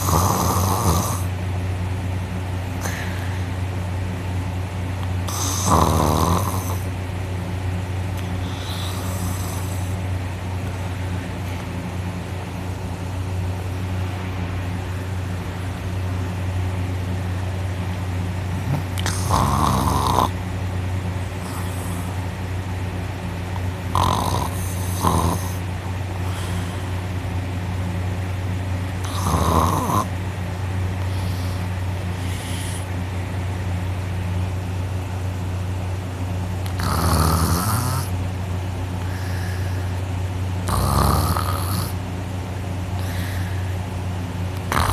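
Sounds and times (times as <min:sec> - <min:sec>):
person snoring: 0:00.0 - 0:01.3, 0:05.3 - 0:06.9, 0:08.4 - 0:10.0, 0:18.6 - 0:20.4, 0:23.9 - 0:25.6, 0:29.0 - 0:30.1, 0:31.0 - 0:32.9, 0:36.7 - 0:38.1, 0:39.0 - 0:40.0, 0:40.6 - 0:42.0, 0:44.6 - 0:44.9
steady low hum: 0:00.0 - 0:44.9
faint breaths: 0:02.8 - 0:03.7, 0:08.2 - 0:10.0, 0:21.4 - 0:22.3, 0:24.5 - 0:27.2, 0:31.0 - 0:33.0, 0:39.0 - 0:40.0, 0:42.9 - 0:43.9.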